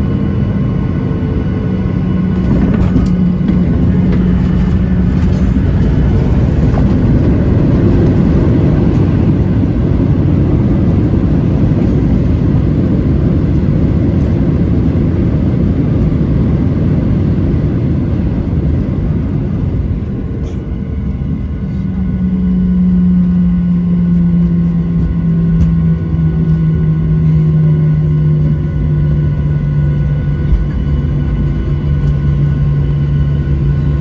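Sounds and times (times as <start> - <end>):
airliner engine rumble: 0.0 - 34.0.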